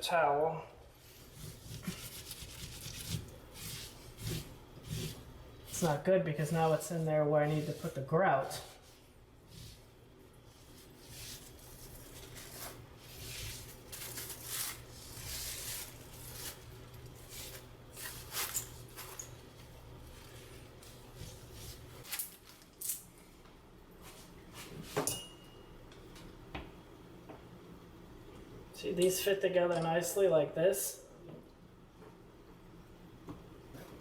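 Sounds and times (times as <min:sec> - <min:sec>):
low steady hum: 0:00.0 - 0:34.0
rustling and scraping handling: 0:01.0 - 0:23.4.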